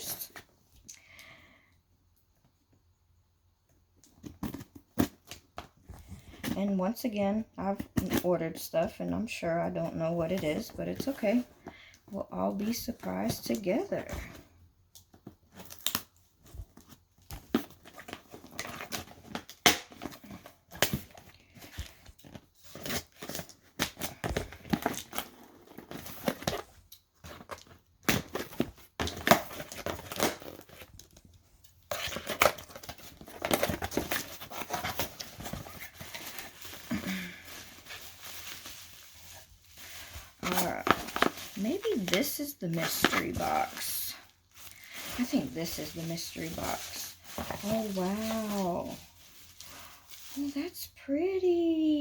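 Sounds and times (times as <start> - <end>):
packing material crinkling: 15.0 - 51.1
cardboard tearing: 15.5 - 31.2, 31.8 - 50.6.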